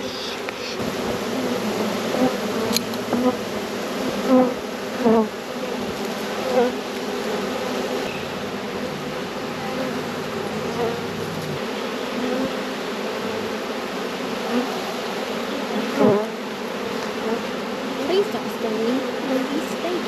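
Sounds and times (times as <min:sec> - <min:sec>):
bee swarm buzzing: 0:00.0 - 0:20.0
bee flying past microphone: 0:00.8 - 0:15.0.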